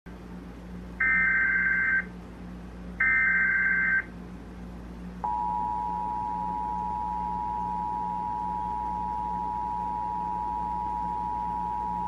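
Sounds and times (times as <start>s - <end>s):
two-tone attention signal: 5.2s - 12.0s.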